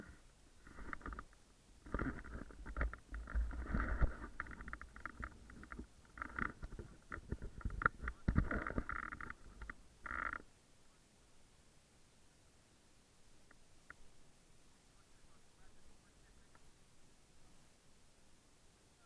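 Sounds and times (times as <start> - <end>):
rustling and crackling: 0.0 - 10.5.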